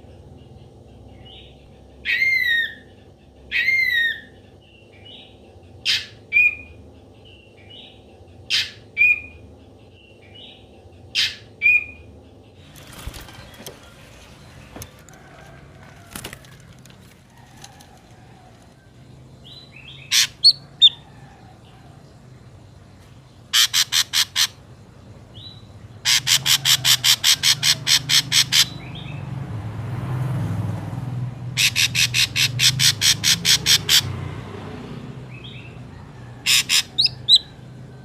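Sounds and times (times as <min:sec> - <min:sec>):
bird calling and whistling: 0:02.0 - 0:02.9, 0:03.5 - 0:04.4, 0:05.8 - 0:06.8, 0:08.5 - 0:09.4, 0:11.1 - 0:12.1, 0:19.5 - 0:21.0, 0:23.5 - 0:24.6, 0:25.4 - 0:29.0, 0:31.6 - 0:34.1, 0:36.4 - 0:37.6.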